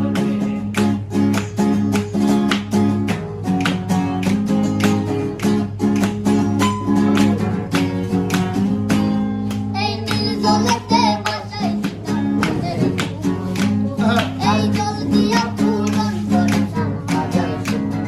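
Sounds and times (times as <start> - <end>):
strummed acoustic guitar: 0.0 - 18.0
person singing: 9.5 - 18.0.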